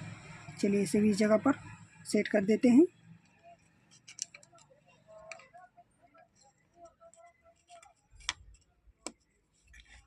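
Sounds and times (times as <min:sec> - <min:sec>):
small clicks and taps of tools: 0:03.9 - 0:09.2.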